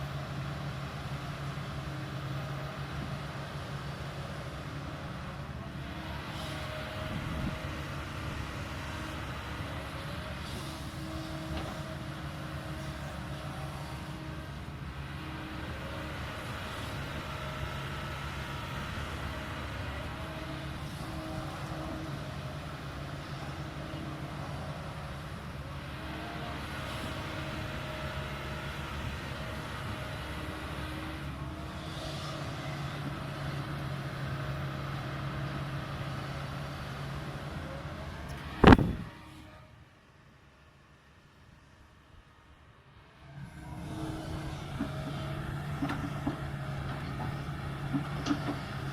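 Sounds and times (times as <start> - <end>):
excavator diesel engine running: 0.0 - 39.3, 43.2 - 48.9
hydraulic hums: 38.0 - 39.3
loud thump: 38.6 - 39.1.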